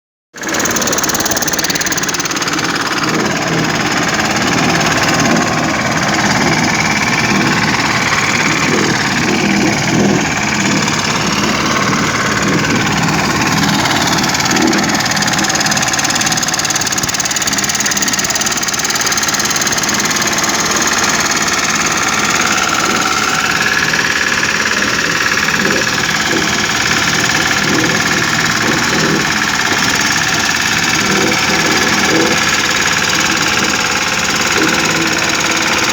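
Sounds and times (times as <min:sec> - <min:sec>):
diesel engine knocking rattle: 0:00.3 - 0:35.9.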